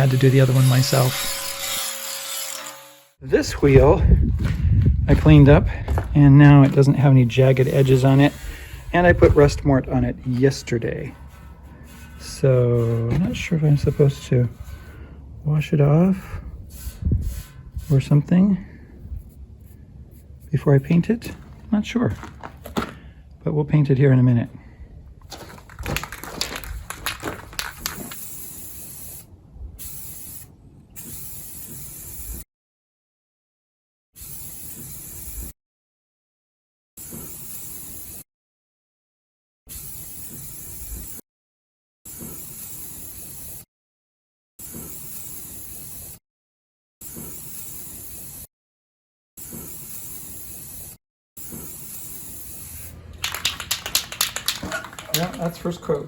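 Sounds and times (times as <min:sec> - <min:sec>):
spray can hissing: 0:16.2 - 0:18.0, 0:25.7 - 0:32.4, 0:34.2 - 0:35.5, 0:37.0 - 0:38.2, 0:39.7 - 0:41.2, 0:42.1 - 0:43.6, 0:44.6 - 0:46.2, 0:47.1 - 0:48.5, 0:49.4 - 0:56.0
spray can rattling: 0:25.3 - 0:29.2, 0:29.8 - 0:32.4, 0:51.5 - 0:56.0.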